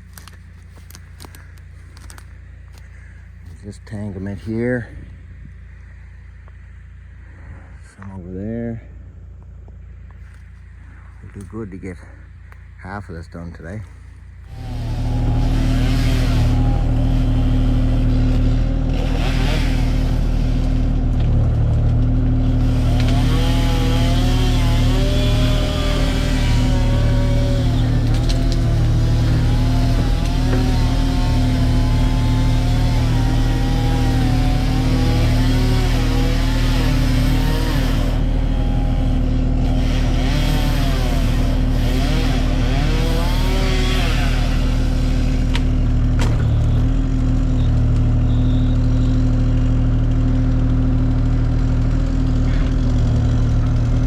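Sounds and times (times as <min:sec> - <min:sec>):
excavator diesel engine running: 0:11.4 - 0:54.0.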